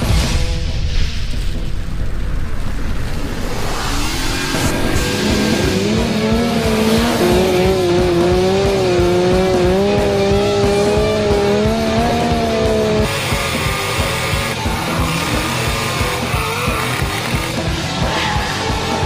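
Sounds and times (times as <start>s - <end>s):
music playing: 0.0s - 19.0s
car tyres squealing: 13.0s - 19.0s.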